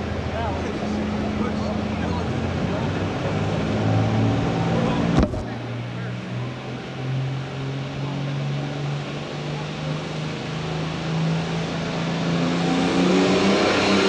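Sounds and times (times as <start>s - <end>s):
tractor engine running hard: 0.0s - 14.0s.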